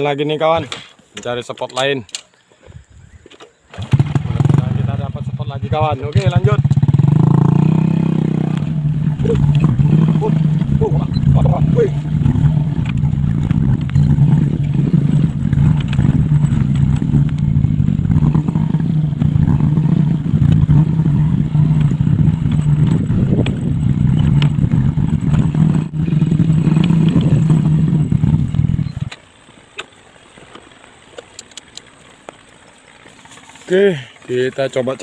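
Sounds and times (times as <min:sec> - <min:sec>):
small petrol engine running: 0:03.7 - 0:35.0
faint clicks: 0:28.5 - 0:34.2.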